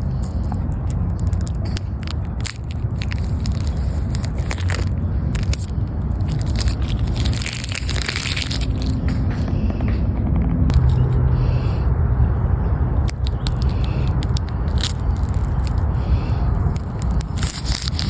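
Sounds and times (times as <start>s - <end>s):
plastic packaging crinkling: 0.0s - 9.1s, 13.0s - 18.0s.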